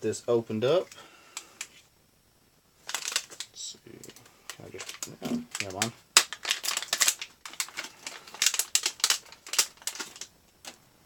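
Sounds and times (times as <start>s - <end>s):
packaging being torn open: 2.9s - 3.5s, 4.5s - 10.3s.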